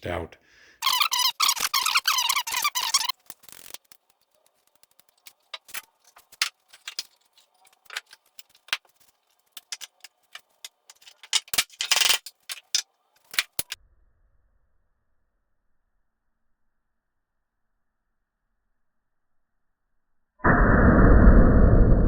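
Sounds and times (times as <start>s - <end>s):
tools and hardware clattering: 5.0s - 13.8s.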